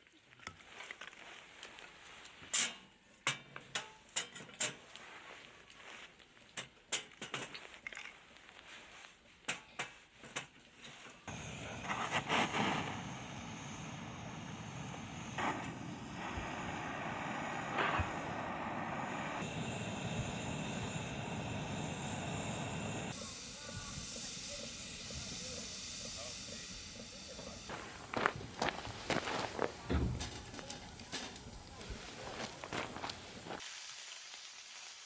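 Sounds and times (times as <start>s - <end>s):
steady hiss of rain: 11.3s - 25.6s, 27.4s - 35.0s.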